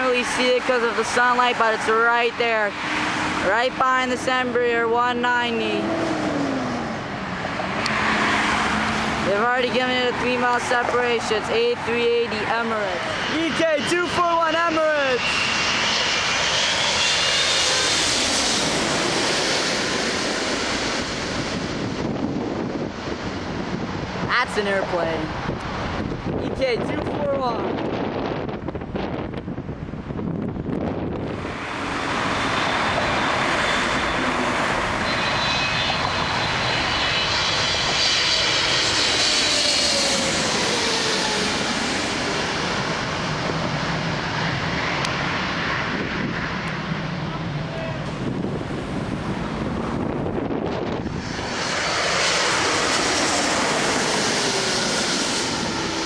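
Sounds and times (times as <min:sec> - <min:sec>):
jet airliner passing: 0:00.0 - 0:56.0.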